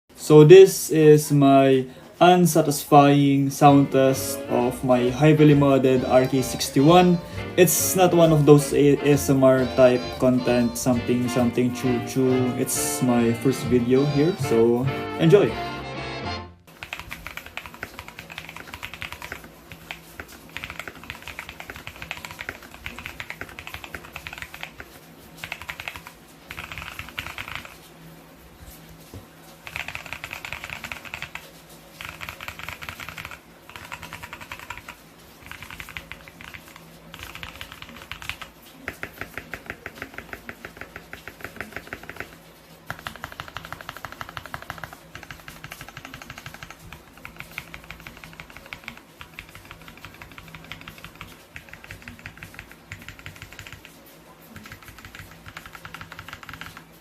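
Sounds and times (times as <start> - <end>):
mechanical keyboard typing: 16.7 - 27.8, 29.6 - 57.0.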